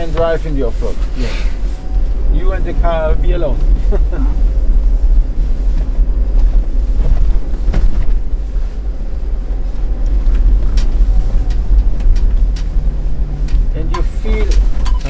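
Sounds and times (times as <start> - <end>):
vehicle cabin engine rumble: 0.0 - 15.0
vehicle knocks: 7.0 - 8.3.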